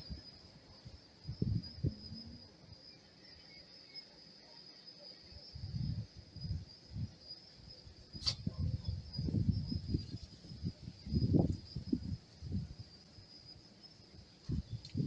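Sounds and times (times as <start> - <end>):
insects chirring: 0.0 - 15.0
sharp click: 8.2 - 8.5.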